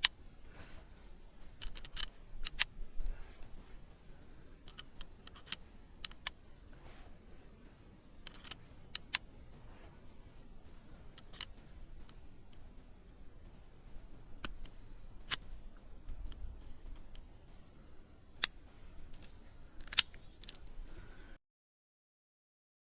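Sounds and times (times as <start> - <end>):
revolver mechanism clicks: 19.2 - 20.7.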